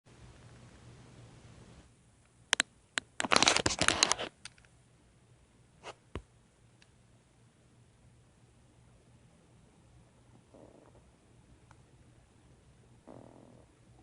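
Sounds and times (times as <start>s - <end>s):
crackling and scratching: 2.6s - 4.7s.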